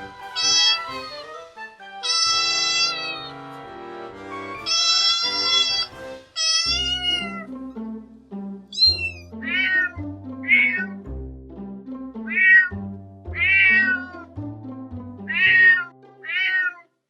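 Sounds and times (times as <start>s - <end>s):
background music: 0.0s - 16.7s
cat meowing: 0.2s - 1.1s, 2.0s - 3.4s, 4.6s - 7.5s, 8.7s - 11.0s, 12.3s - 14.3s, 15.3s - 16.9s.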